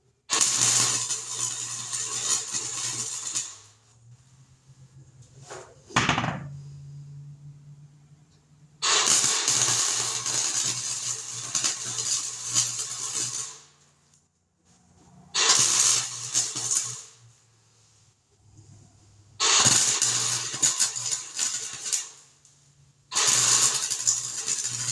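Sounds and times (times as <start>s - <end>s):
welding arc crackling: 0.3s - 4.5s, 8.8s - 13.8s, 15.4s - 17.4s, 19.4s - 24.9s.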